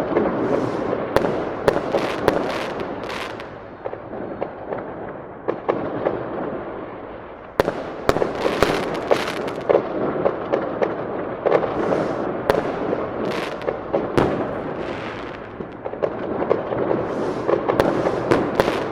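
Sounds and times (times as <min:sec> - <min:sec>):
fireworks bursting and crackling: 0:00.0 - 0:18.9.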